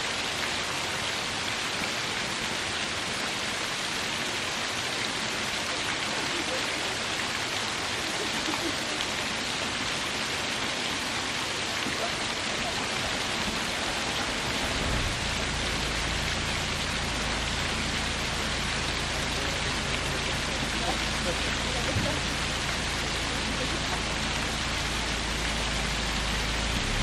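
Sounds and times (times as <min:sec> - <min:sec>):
waterfall splashing: 0:00.0 - 0:27.0
low rumble: 0:13.7 - 0:19.0, 0:23.9 - 0:27.0.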